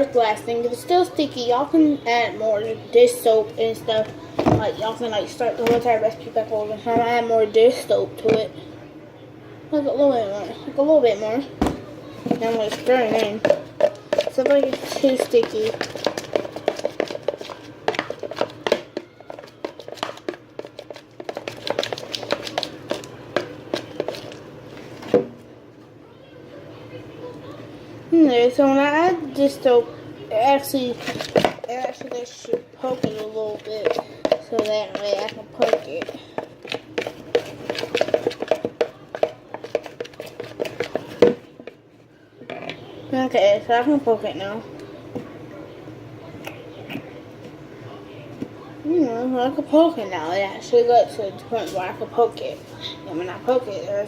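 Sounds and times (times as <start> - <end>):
spoon stirring slime in bowl: 12.2 - 25.4, 29.4 - 42.8.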